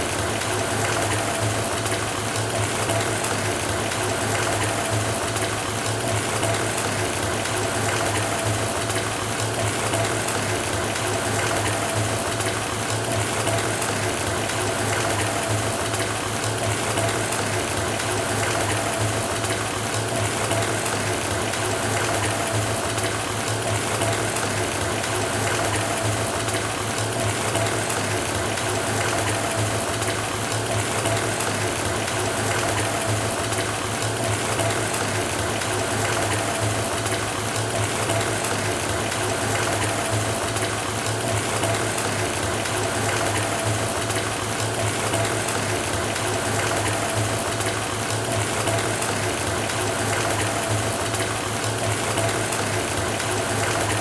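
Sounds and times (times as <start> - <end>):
water running into bathtub: 0.0 - 54.0.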